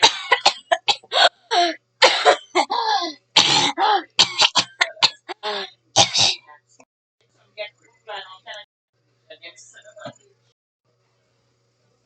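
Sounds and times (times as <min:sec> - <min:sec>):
person coughing harshly: 0:00.0 - 0:06.4.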